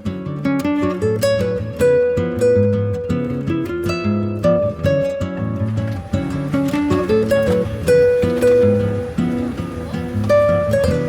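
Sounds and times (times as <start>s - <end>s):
plucked acoustic guitar melody: 0.0s - 11.0s.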